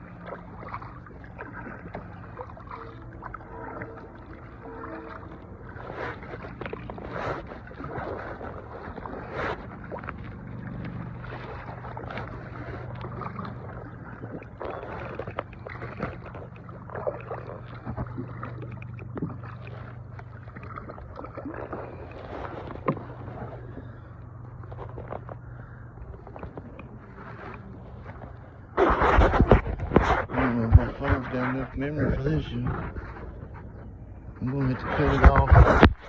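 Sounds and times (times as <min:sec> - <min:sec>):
steady low hum: 0:00.0 - 0:36.0
water sloshing around boat: 0:00.0 - 0:36.0
knocks against hull: 0:28.8 - 0:33.6, 0:35.0 - 0:36.0.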